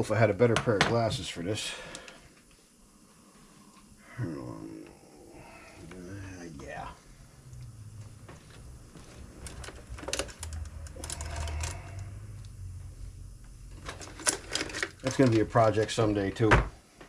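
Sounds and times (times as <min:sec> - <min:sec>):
low steady hum: 0:00.0 - 0:17.0
clicks and rattles of small objects: 0:13.7 - 0:15.5.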